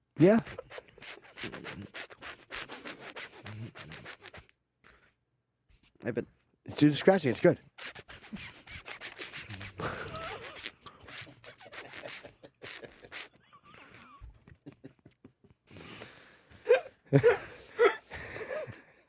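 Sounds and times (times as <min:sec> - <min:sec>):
person mouth imitating record scratching: 0:00.2 - 0:04.5, 0:07.7 - 0:13.4.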